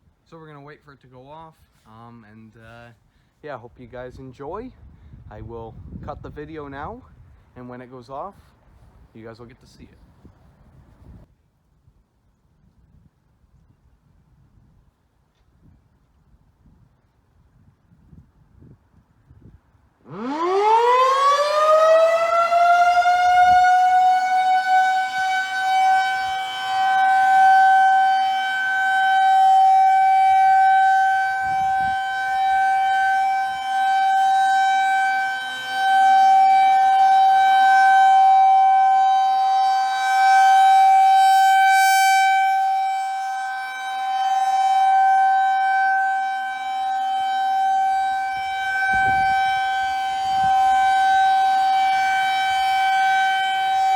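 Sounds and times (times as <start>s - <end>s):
tornado siren: 20.0s - 53.9s.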